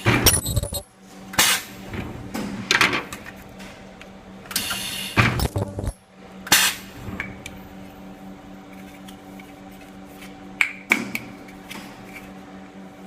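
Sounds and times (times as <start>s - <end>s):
welding machine humming: 0.0s - 1.7s, 3.6s - 10.6s.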